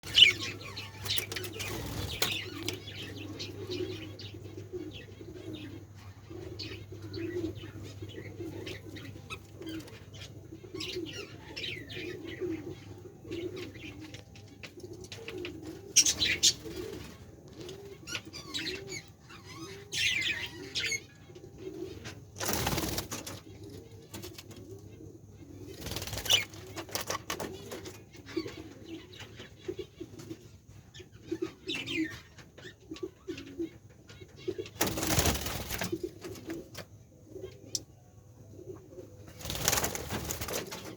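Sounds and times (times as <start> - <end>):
budgerigars chirping: 0.0 - 4.3
wings fluttering: 0.1 - 2.9, 22.4 - 24.4, 25.7 - 27.9, 34.8 - 36.6, 39.3 - 40.9.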